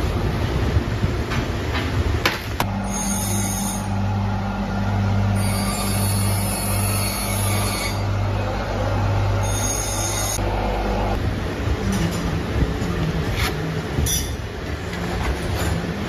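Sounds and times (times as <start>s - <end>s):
machinery humming: 0.0s - 16.0s
high machine whine: 2.6s - 12.9s.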